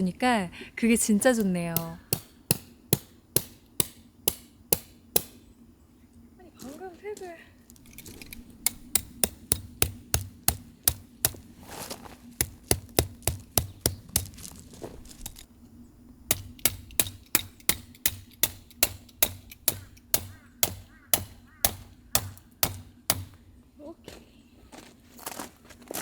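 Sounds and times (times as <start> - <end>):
hammer striking tent pegs: 1.8 - 5.4, 16.3 - 23.4.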